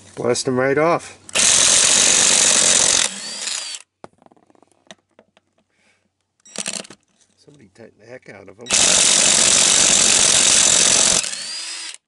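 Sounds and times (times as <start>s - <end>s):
impact wrench running: 1.3s - 3.8s, 8.7s - 12.0s.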